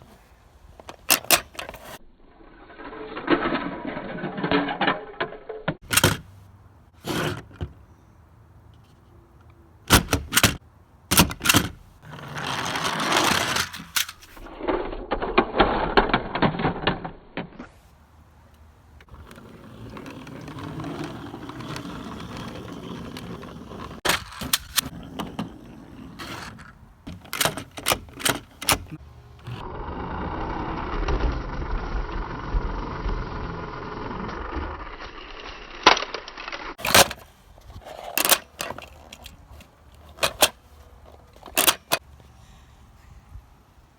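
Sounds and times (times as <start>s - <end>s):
plastic toys rattling and rolling: 12.4s - 17.1s, 19.0s - 29.6s, 34.4s - 42.0s
plastic toys clicking and knocking: 26.2s - 29.0s, 38.1s - 42.0s.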